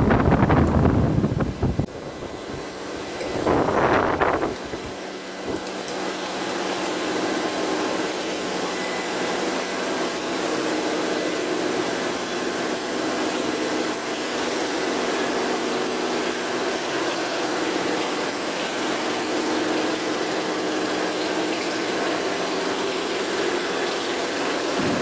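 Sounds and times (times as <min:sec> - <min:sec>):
machine whirring: 0:00.0 - 0:25.0.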